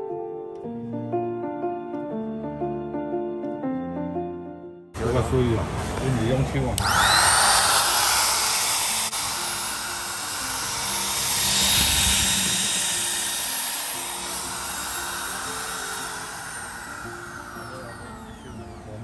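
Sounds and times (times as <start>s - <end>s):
router motor whining: 6.8s - 19.0s.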